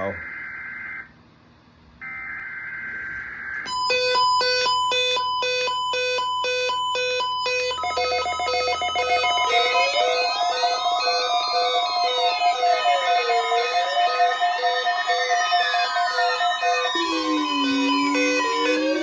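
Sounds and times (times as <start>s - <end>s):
two-tone electronic alert beeping: 16.8s - 19.0s.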